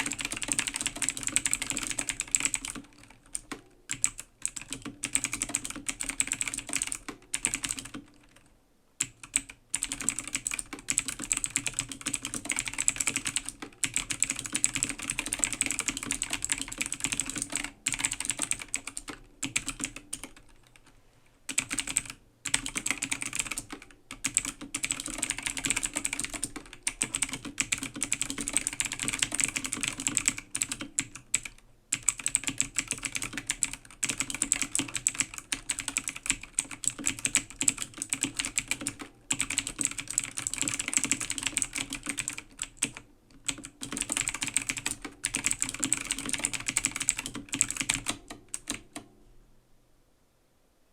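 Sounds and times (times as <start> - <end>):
fast typing on mechanical keyboard: 0.0 - 20.9, 21.5 - 49.1.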